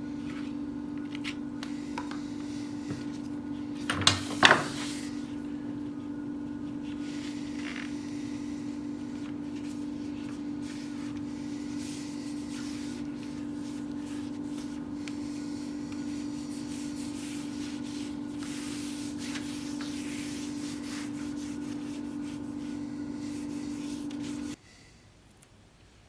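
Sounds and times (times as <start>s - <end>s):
power sander motor hum: 4.6s - 24.6s
sandpaper scraping workpiece: 6.8s - 24.6s.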